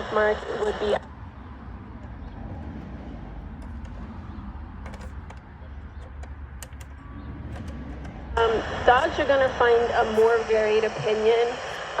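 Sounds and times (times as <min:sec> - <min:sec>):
speaker hum and hiss: 0:00.0 - 0:01.1, 0:08.0 - 0:12.0.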